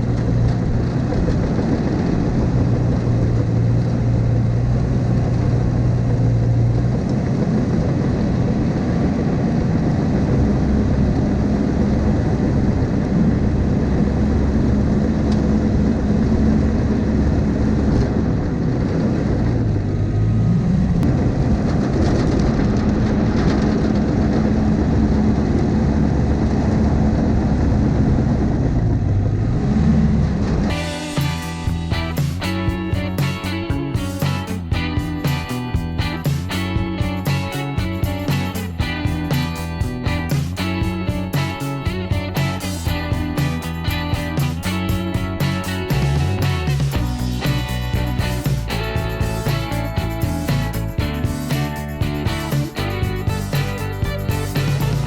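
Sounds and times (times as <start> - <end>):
diesel engine working: 0.0 - 55.0.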